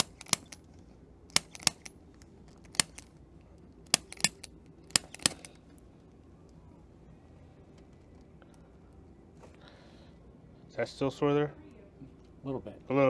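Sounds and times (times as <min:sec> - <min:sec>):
sharp joint clicks: 0:00.0 - 0:00.7, 0:01.3 - 0:03.1, 0:03.9 - 0:05.6.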